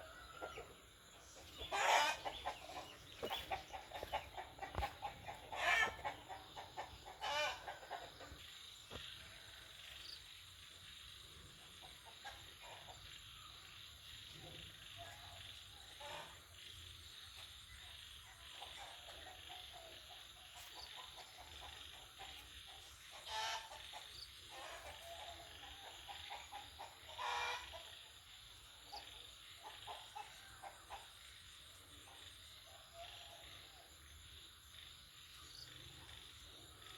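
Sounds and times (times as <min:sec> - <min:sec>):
chickens clucking: 0:00.0 - 0:09.0, 0:18.5 - 0:28.0
chicken drawn-out calls: 0:01.4 - 0:08.4, 0:23.2 - 0:23.9, 0:26.5 - 0:27.8.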